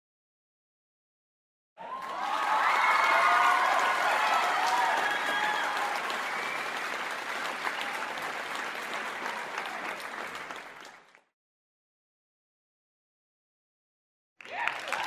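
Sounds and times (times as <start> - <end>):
crowd applause: 1.8 - 11.3, 14.4 - 15.0.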